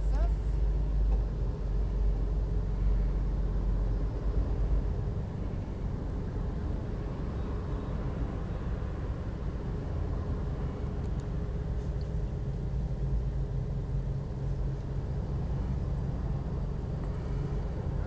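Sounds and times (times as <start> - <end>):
low mechanical rumble: 0.0 - 18.0.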